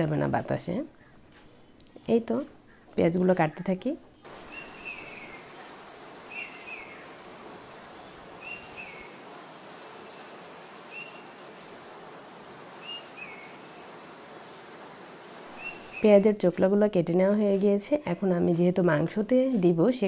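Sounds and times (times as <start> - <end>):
outdoor background hiss: 0.0 - 20.0
small birds chirping: 0.9 - 16.2.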